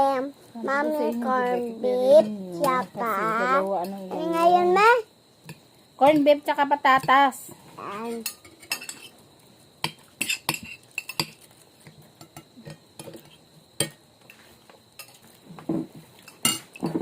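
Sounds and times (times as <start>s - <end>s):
cutlery clinking on a plate: 8.2s - 9.1s, 9.8s - 11.4s, 15.0s - 17.0s.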